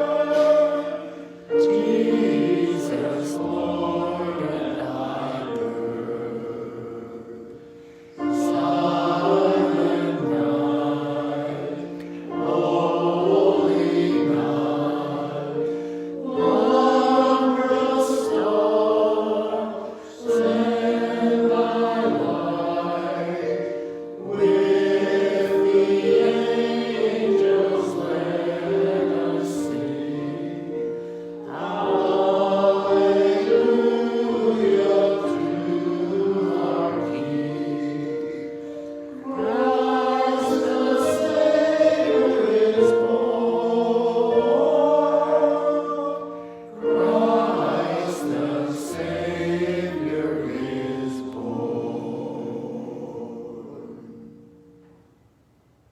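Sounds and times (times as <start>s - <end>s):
choir singing slowly: 0.0s - 55.9s
singers breathing: 7.6s - 8.2s, 15.7s - 16.2s.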